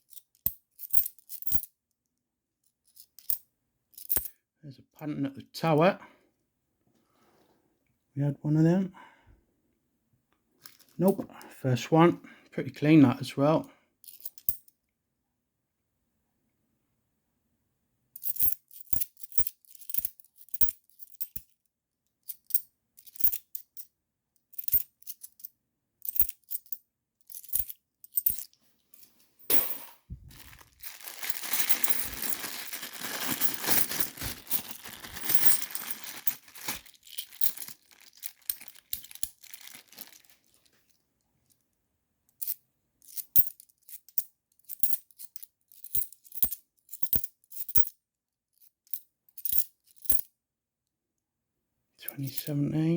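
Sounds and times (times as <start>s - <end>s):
coins clinking: 29.0s - 39.4s
rustling tearing noise: 30.3s - 40.8s.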